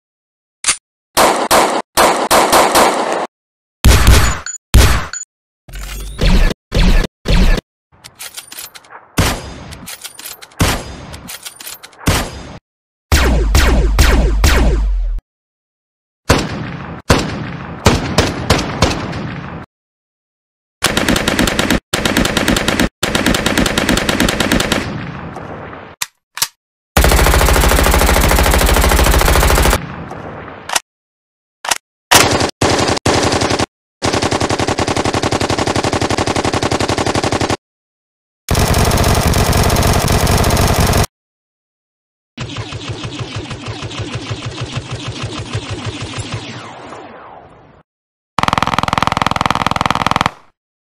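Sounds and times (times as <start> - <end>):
automatic machine-gun fire: 27.0 - 29.8, 38.5 - 41.1, 48.4 - 50.5.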